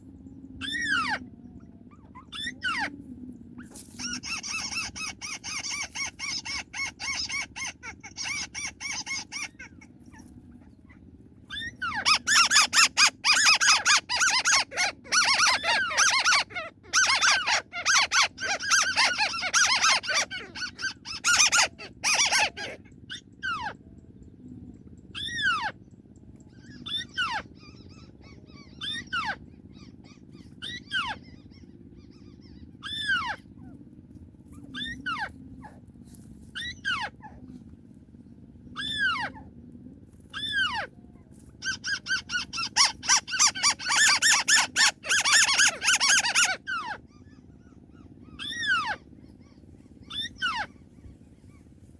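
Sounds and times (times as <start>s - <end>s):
bird chattering calls: 3.6s - 23.8s, 25.1s - 25.9s, 26.5s - 33.5s, 41.6s - 51.6s.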